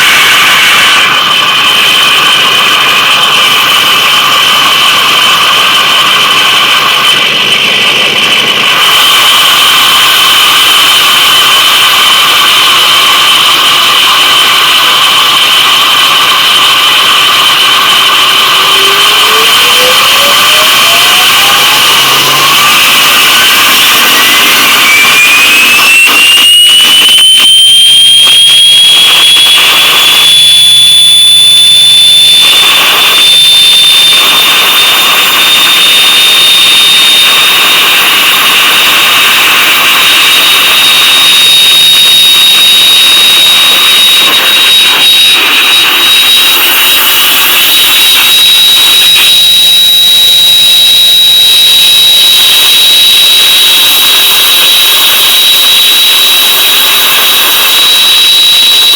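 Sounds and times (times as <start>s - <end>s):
diesel engine rush: 0.0s - 28.4s
turbocharger whistling: 0.0s - 58.9s.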